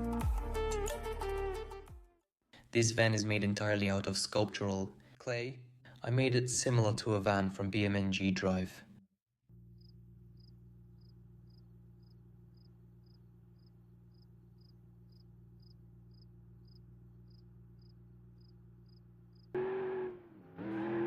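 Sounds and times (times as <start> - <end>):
cricket chirping: 9.8 - 19.5.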